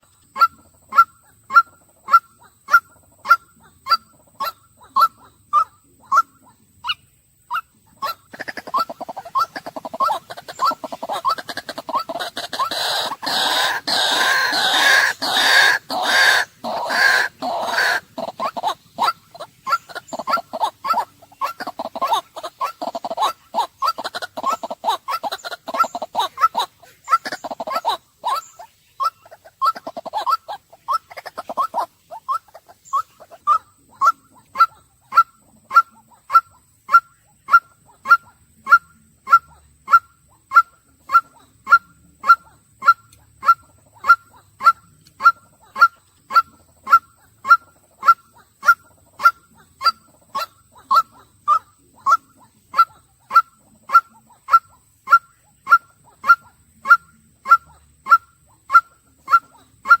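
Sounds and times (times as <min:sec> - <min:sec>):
waterhen calling: 0:00.0 - 1:00.0
rough noisy bird call: 0:08.0 - 0:38.2.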